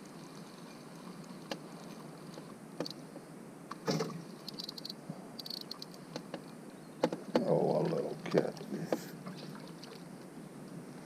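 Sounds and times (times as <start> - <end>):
outdoor background hiss: 0.0 - 11.0
small high ticks: 4.4 - 6.5.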